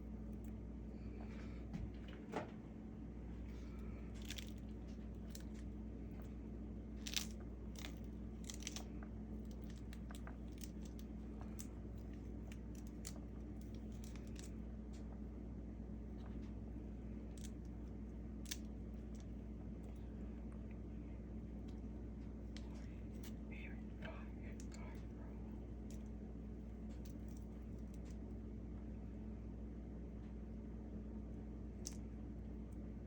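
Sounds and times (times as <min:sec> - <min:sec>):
steady low hum: 0:00.0 - 0:33.0
pomegranate being broken open: 0:03.5 - 0:15.1, 0:16.2 - 0:20.8.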